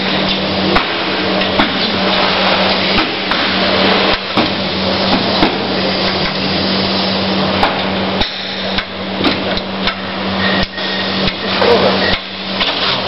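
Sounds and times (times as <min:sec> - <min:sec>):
loud mechanical hum: 0:00.0 - 0:13.0.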